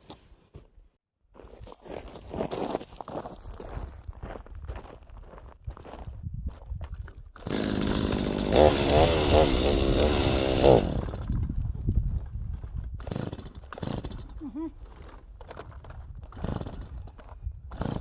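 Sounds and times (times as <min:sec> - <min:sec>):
chainsaw engine revving: 0:07.4 - 0:11.2, 0:13.0 - 0:14.4, 0:17.7 - 0:18.0.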